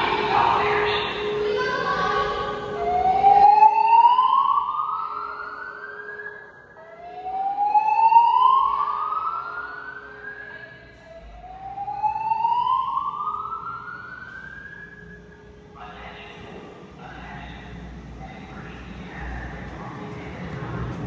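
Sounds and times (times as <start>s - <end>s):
fire alarm whoop tone: 2.9s - 15.4s.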